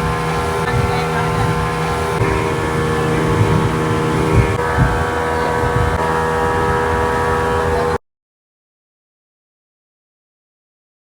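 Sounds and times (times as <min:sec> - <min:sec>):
boat engine running: 0:00.0 - 0:08.0
rumbling water: 0:00.0 - 0:08.0
wind noise: 0:00.0 - 0:08.0.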